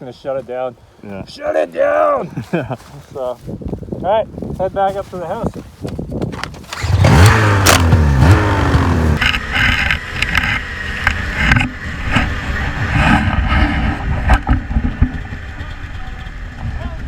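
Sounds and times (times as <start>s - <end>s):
snowmobile engine revving: 6.7s - 14.0s.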